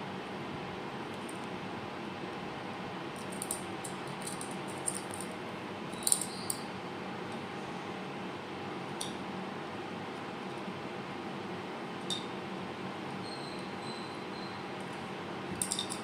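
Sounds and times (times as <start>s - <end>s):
steady room hum: 0.0s - 16.0s.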